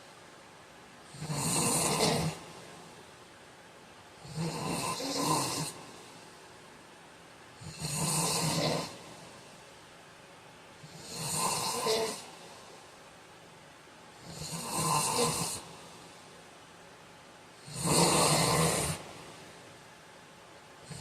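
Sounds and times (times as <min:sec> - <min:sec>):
man snoring: 0:01.1 - 0:02.7, 0:04.2 - 0:06.0, 0:07.6 - 0:09.1, 0:10.8 - 0:12.5, 0:14.2 - 0:16.0, 0:17.6 - 0:19.4
quiet breathing: 0:04.1 - 0:06.8, 0:07.5 - 0:10.0, 0:10.7 - 0:13.2, 0:14.1 - 0:21.0.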